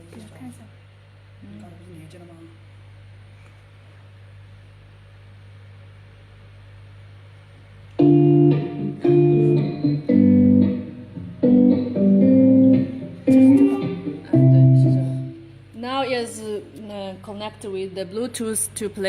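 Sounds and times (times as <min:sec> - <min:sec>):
low steady speaker hum: 0:00.0 - 0:19.0
guitar chords through speaker: 0:08.0 - 0:15.7.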